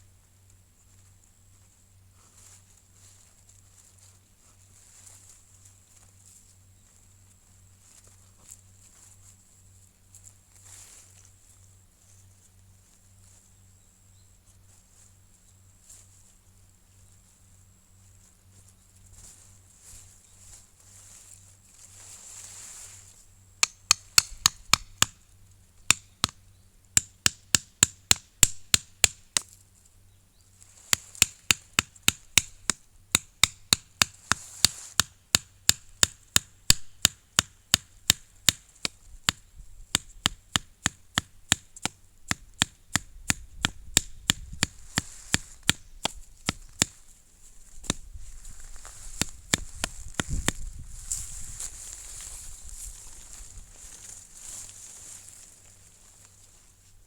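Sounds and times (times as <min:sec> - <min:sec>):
chopping wood: 0:23.6 - 0:25.2, 0:25.9 - 0:26.4, 0:27.0 - 0:29.5, 0:30.8 - 0:47.0, 0:49.1 - 0:50.7.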